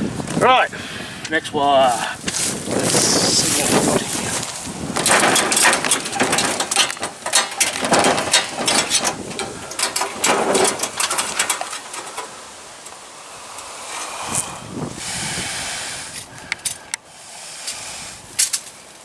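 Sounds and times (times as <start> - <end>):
fencing wire rattling and scraping: 1.8 - 13.1.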